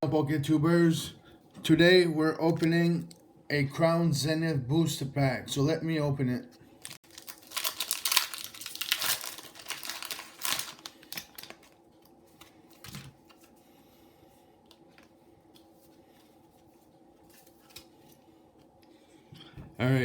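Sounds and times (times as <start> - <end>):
foil wrapper tearing and crinkling: 6.8 - 11.9.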